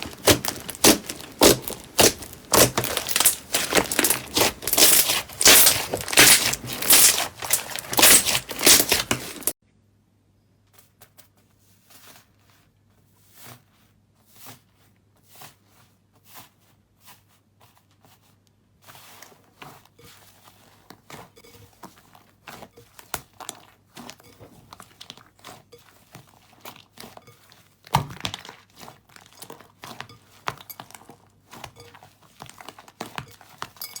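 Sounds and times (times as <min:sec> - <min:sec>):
slime crackling: 0:00.0 - 0:09.5.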